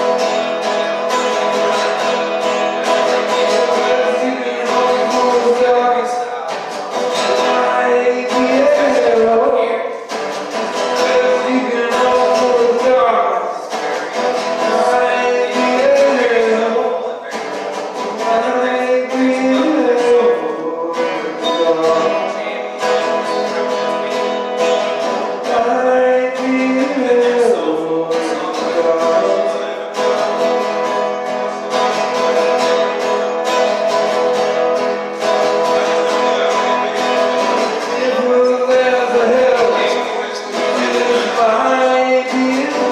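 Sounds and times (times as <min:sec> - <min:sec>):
person singing: 0:00.0 - 0:42.9
strummed acoustic guitar: 0:00.0 - 0:42.9.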